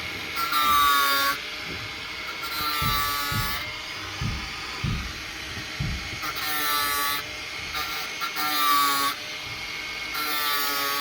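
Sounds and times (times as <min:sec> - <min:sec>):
chain sharpener whining: 0:00.0 - 0:11.0
grinding hiss: 0:00.0 - 0:11.0
dull knocks: 0:02.6 - 0:06.4.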